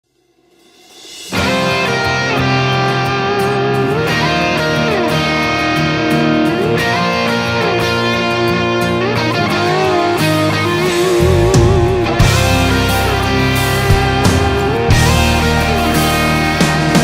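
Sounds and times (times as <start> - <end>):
steady drum beat: 0.5 - 5.4, 10.2 - 17.0
bass guitar: 1.3 - 17.0
electric guitar bending notes: 1.3 - 17.0.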